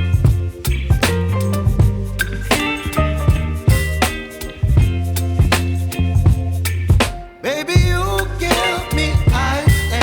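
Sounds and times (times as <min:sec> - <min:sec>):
funky upbeat pop music: 0:00.0 - 0:10.0.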